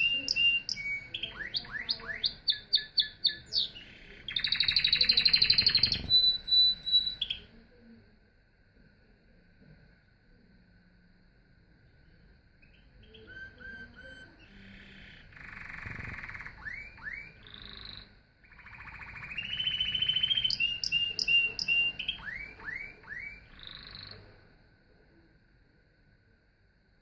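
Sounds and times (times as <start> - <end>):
canary singing: 0.0 - 7.6, 12.6 - 24.4.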